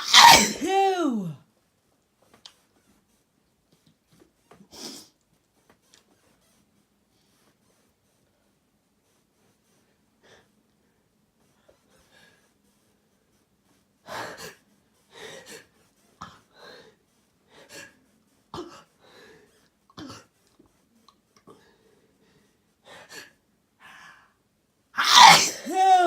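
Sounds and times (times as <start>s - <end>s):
person gasping before sneeze: 0.0s - 1.4s, 25.0s - 26.0s.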